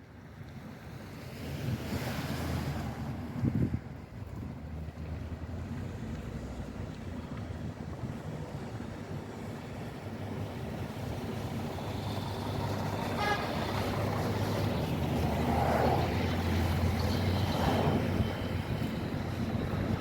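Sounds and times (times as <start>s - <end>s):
road traffic rumble: 0.1s - 20.0s
wind on microphone: 1.6s - 5.4s, 10.4s - 20.0s
car horn toot: 13.2s - 13.7s.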